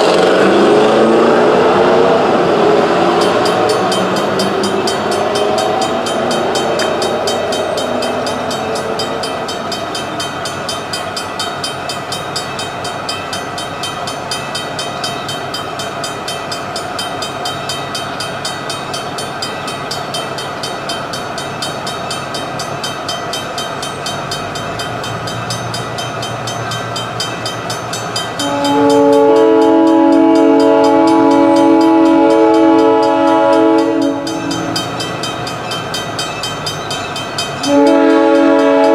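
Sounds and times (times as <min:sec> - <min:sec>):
train rumbling: 0:00.0 - 0:38.9
locomotive air horn blast: 0:28.4 - 0:34.4, 0:37.7 - 0:38.9.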